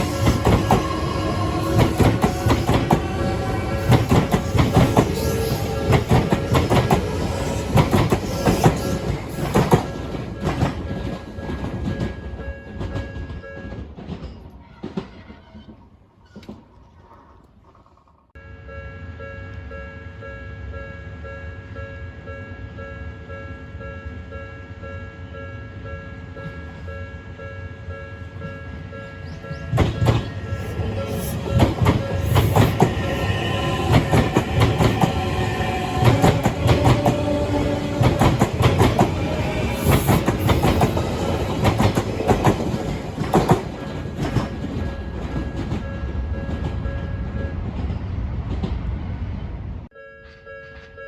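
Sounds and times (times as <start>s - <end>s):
level crossing alarm ringing: 0.0s - 13.9s, 18.4s - 47.8s
train wheels clicking over rail joints: 0.0s - 18.2s, 28.4s - 49.0s.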